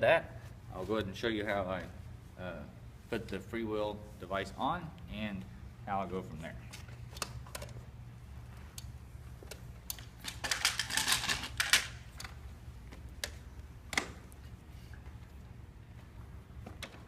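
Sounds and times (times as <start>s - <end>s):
steady low hum: 0.0s - 17.0s
metal parts clicking: 9.9s - 12.4s.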